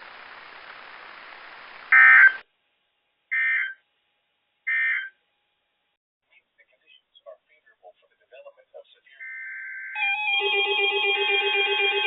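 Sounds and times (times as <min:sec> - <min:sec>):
faint radio hiss: 0:06.2 - 0:09.2.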